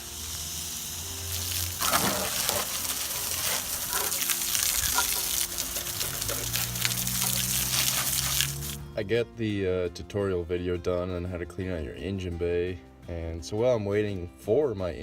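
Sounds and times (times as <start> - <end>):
liquid spraying with steady hiss: 0.0 - 8.8.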